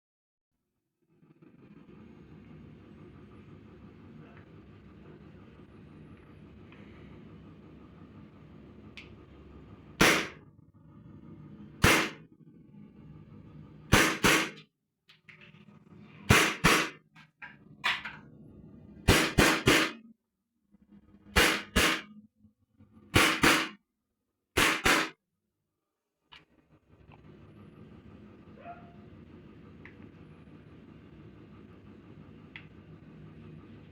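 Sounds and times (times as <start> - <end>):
airsoft gun shots: 10.0 - 10.4, 11.8 - 12.2, 13.9 - 14.6, 16.3 - 17.0, 19.1 - 20.0, 21.4 - 22.1, 23.2 - 23.8, 24.6 - 25.1.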